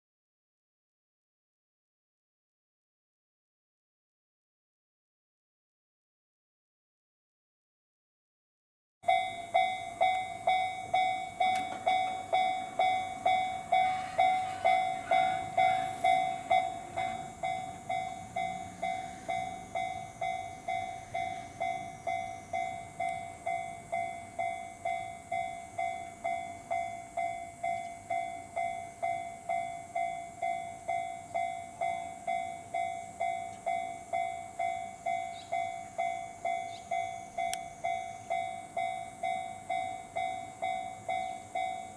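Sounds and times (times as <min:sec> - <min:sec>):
level crossing bell ringing: 0:09.1 - 0:41.9.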